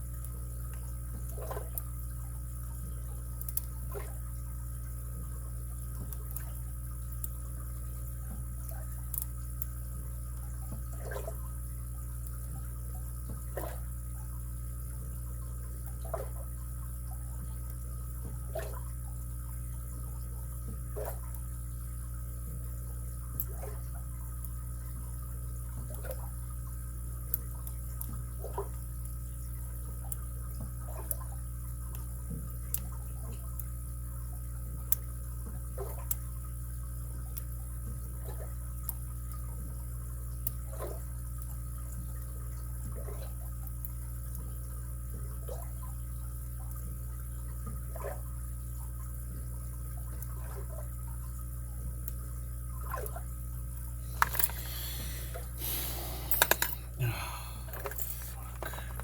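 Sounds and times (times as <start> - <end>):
low hum: 53.8 - 59.0
lock picks clicking in padlock: 54.2 - 54.7, 56.3 - 56.8.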